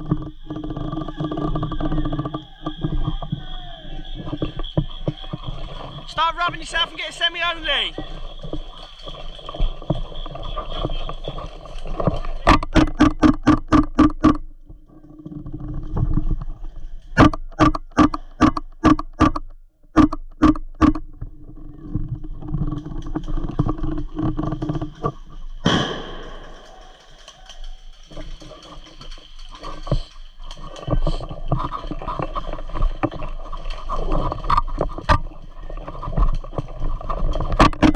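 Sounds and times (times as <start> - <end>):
airsoft gun shots: 25.6 - 26.7.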